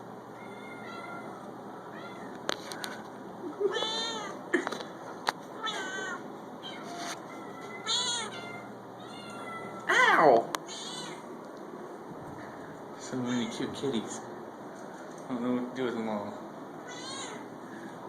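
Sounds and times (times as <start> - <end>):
cat meowing: 0.4 - 2.4, 3.6 - 4.4, 5.6 - 11.3, 16.8 - 17.5.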